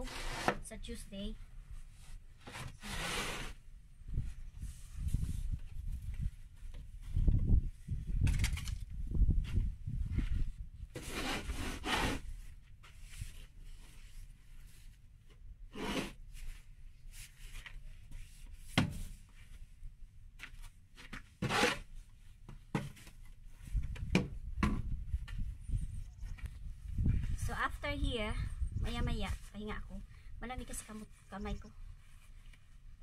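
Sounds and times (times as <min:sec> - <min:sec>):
wind rumble on microphone: 0:03.9 - 0:11.6, 0:23.6 - 0:32.0.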